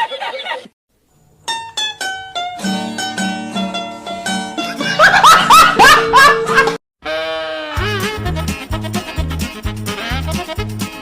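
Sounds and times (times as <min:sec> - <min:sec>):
plucked string comic tune: 0:01.5 - 0:06.8
person laughing: 0:04.6 - 0:06.8.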